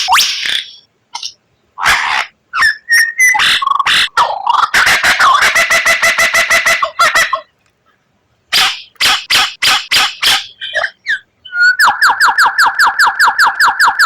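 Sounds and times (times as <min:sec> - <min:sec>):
bird singing harsh rapid notes: 0:00.0 - 0:05.4, 0:08.5 - 0:14.0
bird whistled notes: 0:02.6 - 0:03.9.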